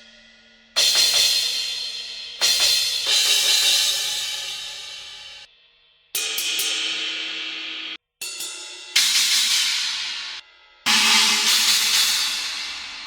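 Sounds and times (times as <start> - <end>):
cymbal hits ringing: 6.2 - 13.0
cymbal struck in quick succession: 8.3 - 13.0.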